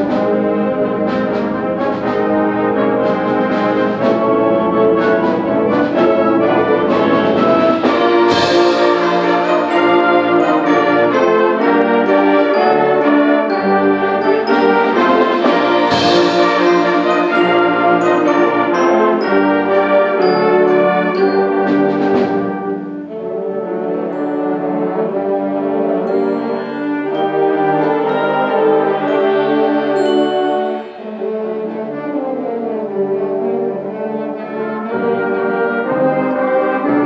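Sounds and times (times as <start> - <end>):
percussion strikes: 0.0 - 33.0
symphonic band playing brass piece: 0.0 - 37.0
loud cymbal crash: 3.9 - 10.4, 15.4 - 18.2, 29.3 - 32.0.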